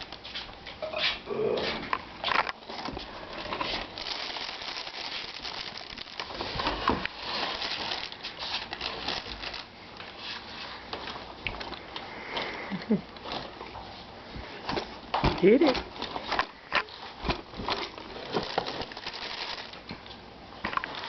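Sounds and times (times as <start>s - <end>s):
plastic package crinkling: 2.6s - 9.7s, 15.4s - 20.1s, 20.7s - 21.0s.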